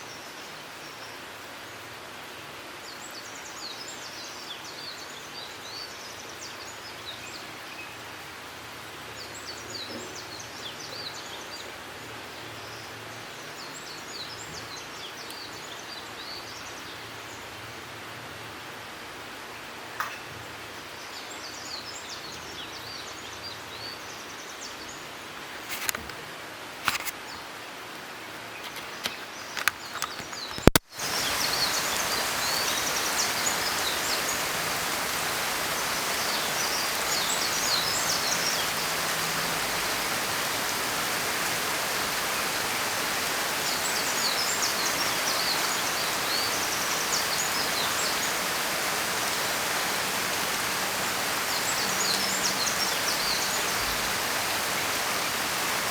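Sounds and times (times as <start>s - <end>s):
rain: 0.0s - 55.9s
birds chirping: 28.6s - 55.9s
sharp click: 29.0s - 30.9s.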